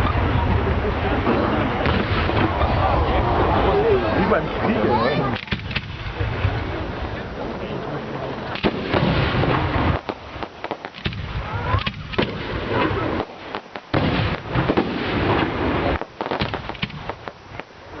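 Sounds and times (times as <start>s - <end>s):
fireworks bangs and crackling: 0.0s - 18.0s.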